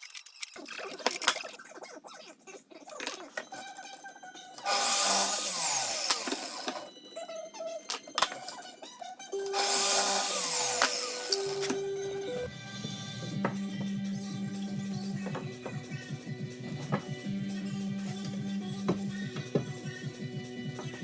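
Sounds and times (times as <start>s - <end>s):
power tool running: 4.6s - 6.9s, 9.4s - 12.3s
background music: 9.2s - 21.0s.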